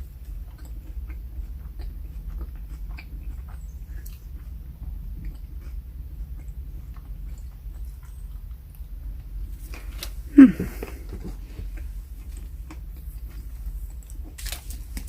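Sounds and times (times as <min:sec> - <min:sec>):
chewing mouth clicks and smacks: 0:00.0 - 0:10.2
steady low hum: 0:00.0 - 0:15.0.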